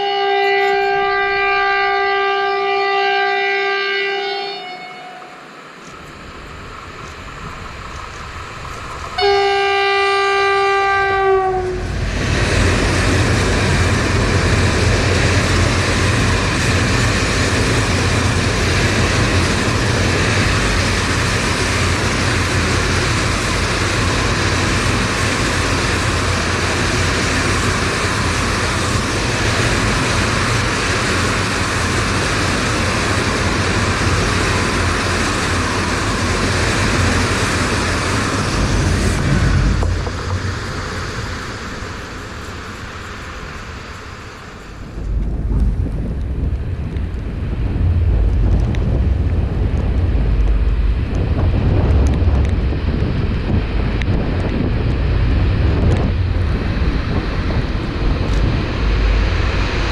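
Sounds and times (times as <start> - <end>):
train horn blast: 0.0 - 5.6, 9.2 - 12.0
train wheels on rails: 3.7 - 59.9.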